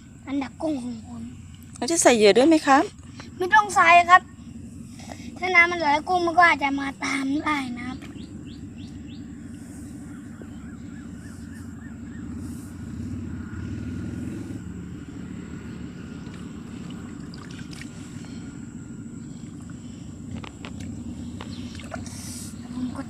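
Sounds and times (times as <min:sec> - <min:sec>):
high insect buzz: 0:00.0 - 0:23.0
faint chirps: 0:02.8 - 0:23.0
stream water burbling: 0:15.2 - 0:23.0.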